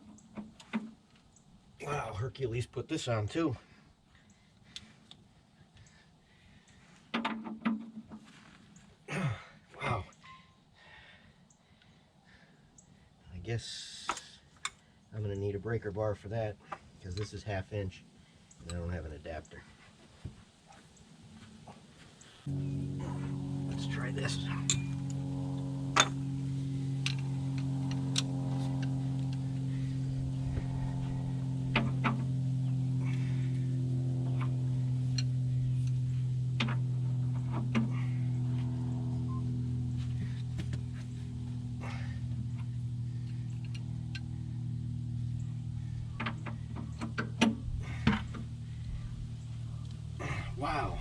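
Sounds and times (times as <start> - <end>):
droning hum: 21.2 - 51.0.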